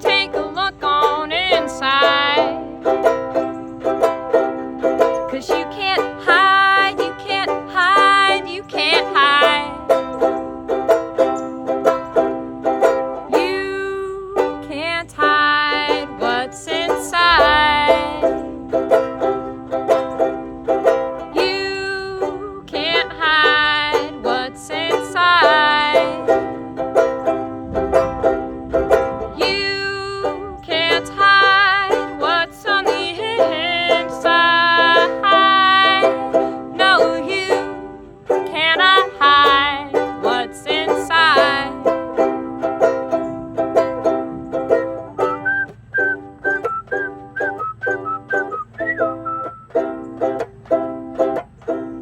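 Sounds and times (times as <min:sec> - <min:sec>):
woman singing: 0:00.0 - 0:03.0, 0:05.0 - 0:10.3, 0:13.2 - 0:18.7, 0:21.2 - 0:26.7, 0:29.0 - 0:42.2
banjo-ukulele strumming: 0:00.0 - 0:52.0.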